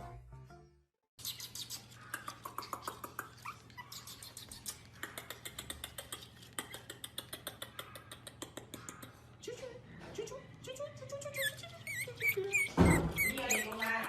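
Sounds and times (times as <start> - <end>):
puppy whimpering: 2.6 - 5.0, 11.2 - 14.0.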